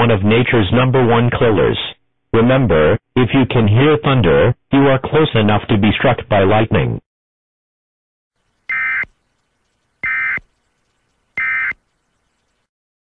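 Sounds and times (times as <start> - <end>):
warbling digital data tones: 8.4 - 12.7.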